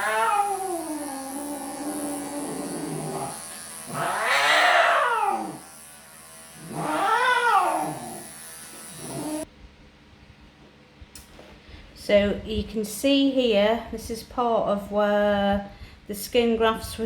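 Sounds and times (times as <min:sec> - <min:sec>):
cat yowling: 0:00.0 - 0:03.3, 0:03.9 - 0:05.7, 0:06.6 - 0:08.2
electric clippers whining: 0:00.0 - 0:09.5.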